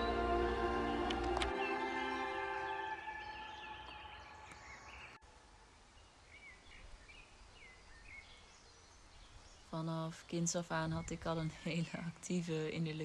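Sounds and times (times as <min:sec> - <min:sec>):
music: 0:00.0 - 0:04.0
outdoor background noise: 0:00.0 - 0:13.0
small birds chirping faintly: 0:00.4 - 0:13.0.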